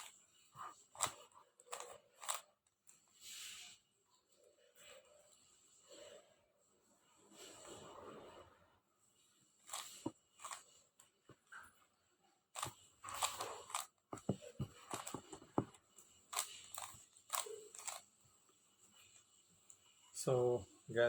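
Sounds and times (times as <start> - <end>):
puzzle cube layers clicking: 12.6 - 15.7, 16.3 - 18.0.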